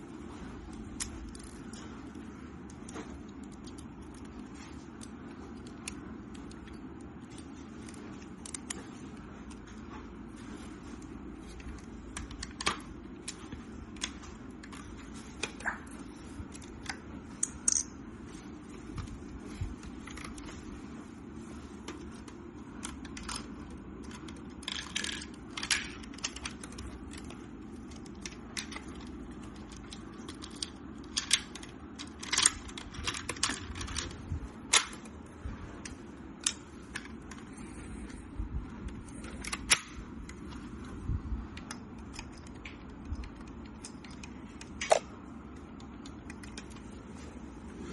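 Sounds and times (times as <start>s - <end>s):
steady low hum: 0.0s - 47.9s
plastic bricks clicking and rattling: 22.8s - 35.0s.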